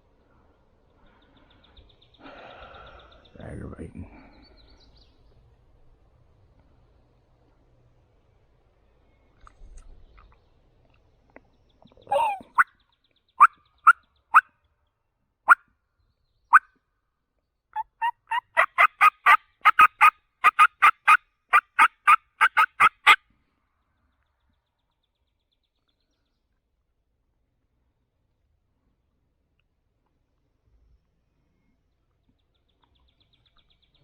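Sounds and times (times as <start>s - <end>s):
turkey clucks and yelps: 12.0s - 12.7s, 17.8s - 23.2s.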